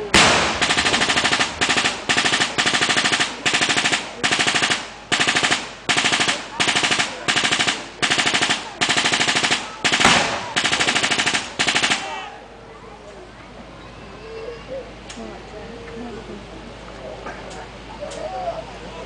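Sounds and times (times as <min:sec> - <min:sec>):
loud bang: 0:00.0 - 0:04.2
machine-gun fire bursts: 0:00.0 - 0:12.2.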